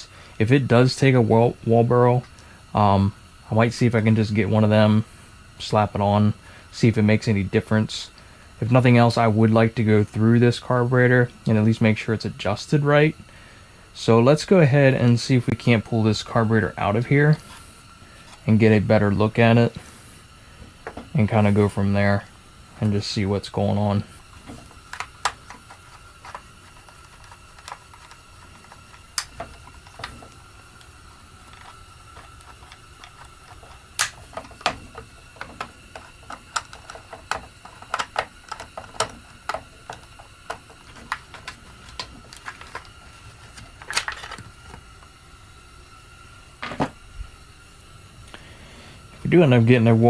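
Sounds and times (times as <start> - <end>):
hand tools clicking on metal parts: 24.4 - 44.5.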